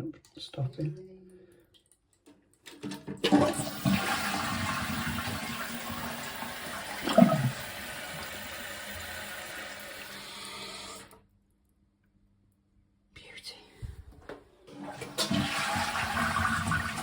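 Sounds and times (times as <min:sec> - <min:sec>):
toilet flushing water rush: 0:03.2 - 0:11.2, 0:14.7 - 0:17.0.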